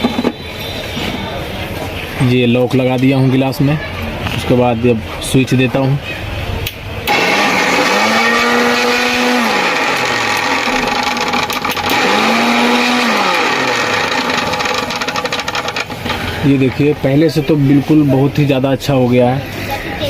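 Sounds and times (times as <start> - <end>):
mixer grinder motor whining: 7.1 - 17.0.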